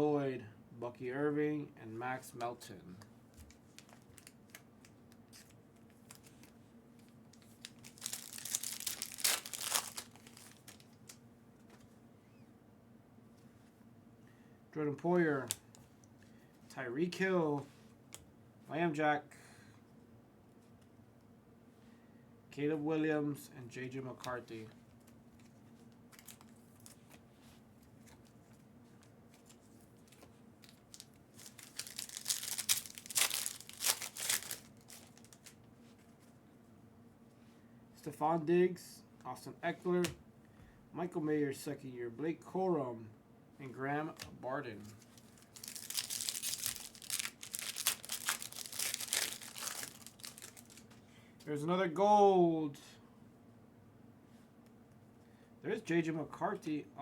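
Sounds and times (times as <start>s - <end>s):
wrapper crinkling and tearing: 3.5s - 11.2s, 25.4s - 27.2s, 29.3s - 35.6s, 45.0s - 51.0s.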